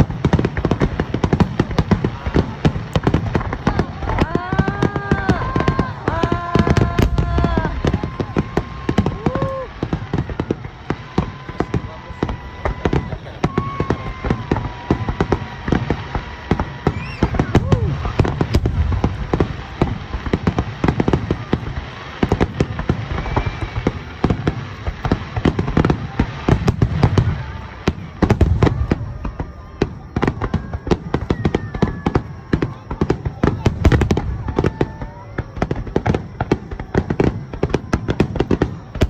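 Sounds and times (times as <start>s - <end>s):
fireworks sharp bangs: 0.0s - 39.0s
deep booming rumbles: 17.6s - 20.2s.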